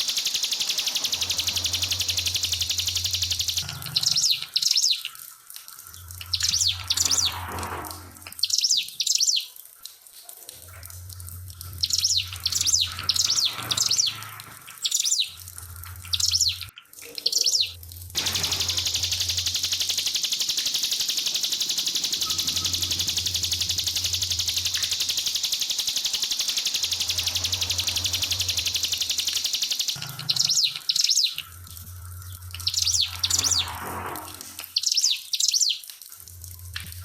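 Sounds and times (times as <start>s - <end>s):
bird high sharp calls: 0.0s - 5.1s, 6.3s - 7.5s, 11.8s - 14.2s, 16.1s - 31.4s, 32.6s - 33.8s
bird buzzy rattle: 0.0s - 9.4s, 10.6s - 35.5s
trickling water: 0.0s - 37.0s.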